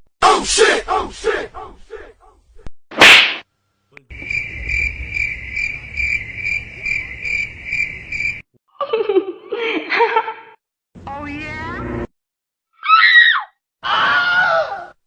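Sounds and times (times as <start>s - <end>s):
cricket chirping: 4.1s - 8.5s.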